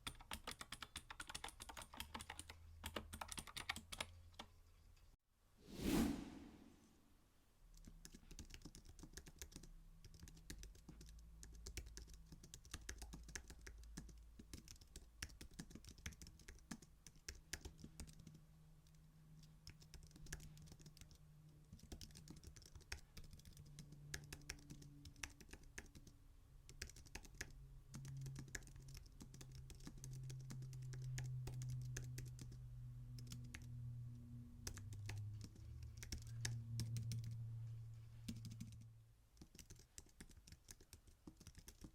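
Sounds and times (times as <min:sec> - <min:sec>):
keyboard typing clicks: 0:00.0 - 0:04.5, 0:19.7 - 0:32.6.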